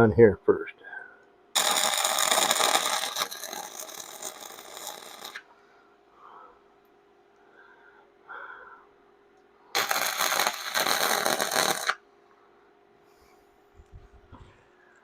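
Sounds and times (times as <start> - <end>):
electric arc welder crackling: 1.5 - 5.5, 9.8 - 12.0.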